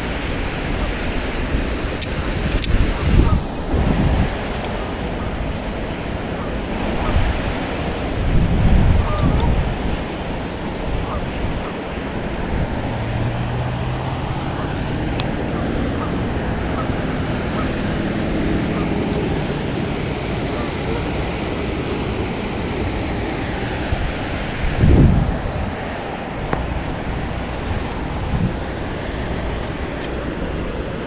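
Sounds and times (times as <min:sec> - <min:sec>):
steady rushing noise: 0:00.0 - 0:31.0
wind buffeting microphone: 0:00.0 - 0:31.0
low motor hum: 0:09.8 - 0:31.0.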